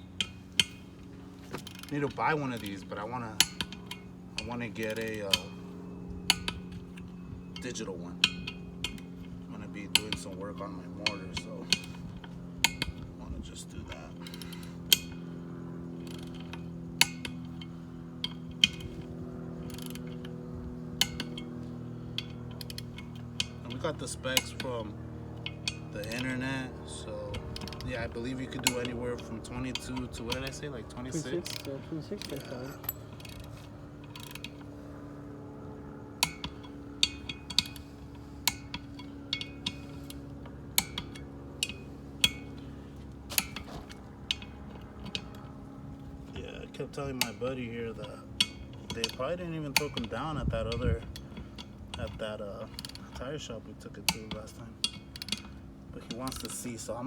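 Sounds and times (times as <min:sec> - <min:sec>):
steady low hum: 0:00.0 - 0:57.0
metal tool clicks and clinks: 0:01.5 - 0:34.8, 0:35.7 - 0:42.7, 0:43.3 - 0:45.6, 0:46.2 - 0:57.0.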